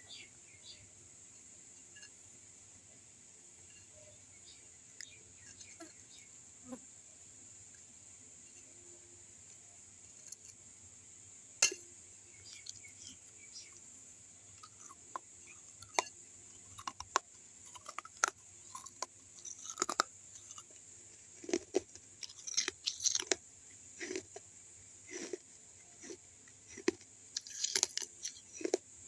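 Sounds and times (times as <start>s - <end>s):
person chewing crunchy clay: 12.4s - 13.2s, 14.6s - 23.4s, 24.0s - 28.9s.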